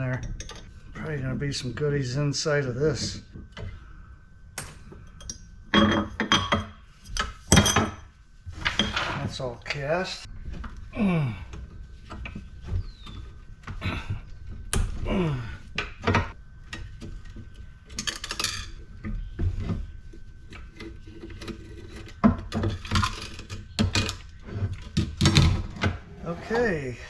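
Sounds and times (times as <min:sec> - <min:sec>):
hand tools and metal parts clinking: 0:08.6 - 0:09.9.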